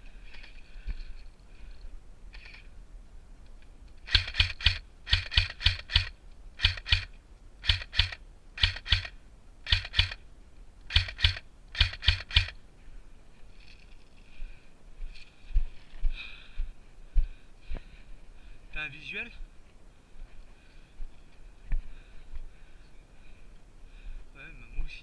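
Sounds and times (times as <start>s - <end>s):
airsoft gun firing: 4.0s - 10.2s, 10.9s - 12.6s.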